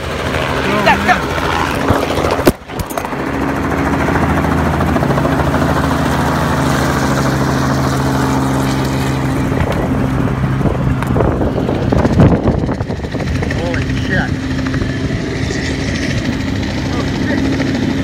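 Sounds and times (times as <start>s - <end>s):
helicopter rotor and engine: 0.0s - 18.0s.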